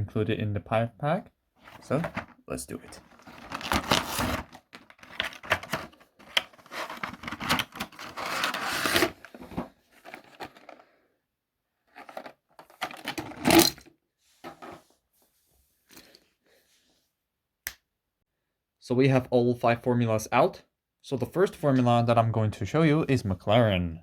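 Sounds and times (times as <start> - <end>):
blister packaging being torn open: 3.2 - 5.8.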